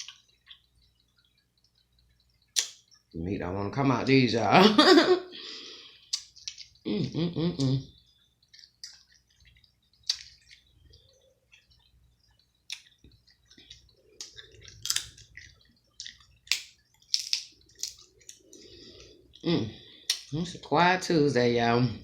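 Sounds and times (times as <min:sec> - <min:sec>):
crab shell cracking: 0:02.4 - 0:02.9, 0:08.4 - 0:10.8, 0:12.6 - 0:18.5
shell crunching and squishing: 0:12.6 - 0:18.5.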